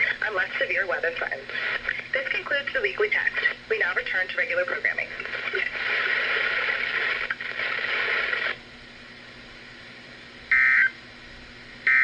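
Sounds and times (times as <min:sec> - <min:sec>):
data tone burst: 0:10.5 - 0:11.0.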